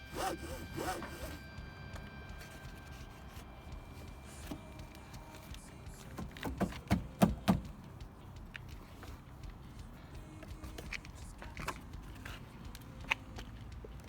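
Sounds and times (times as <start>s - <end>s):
clicks and knocks of car trim: 4.0s - 9.6s.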